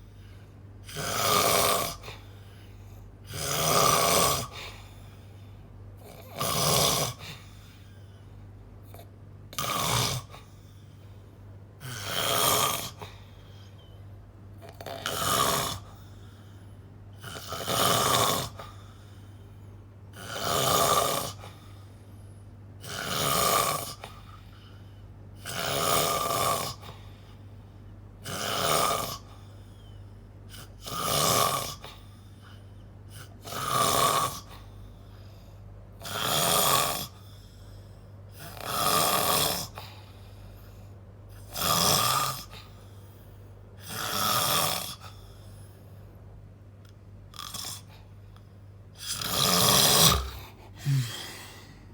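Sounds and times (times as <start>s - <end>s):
person snoring loudly: 0.8s - 2.2s, 3.2s - 4.7s, 6.0s - 7.4s, 9.5s - 10.4s, 11.8s - 13.0s, 14.6s - 16.0s, 17.2s - 18.8s, 20.1s - 21.6s, 22.8s - 24.1s, 25.4s - 26.9s, 28.2s - 29.3s, 30.8s - 31.8s, 33.2s - 34.6s, 36.0s - 37.2s, 38.3s - 39.8s, 41.4s - 42.5s, 43.8s - 45.1s, 49.0s - 51.9s.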